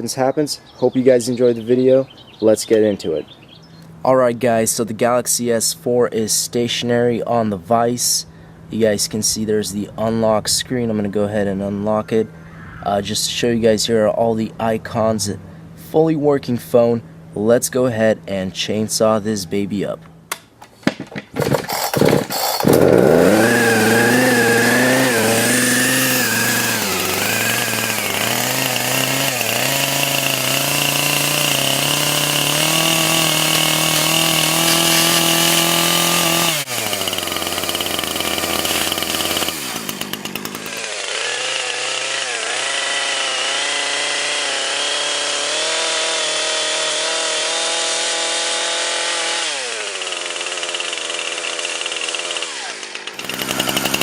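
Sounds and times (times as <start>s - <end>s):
chainsaw engine revving: 21.3s - 54.0s.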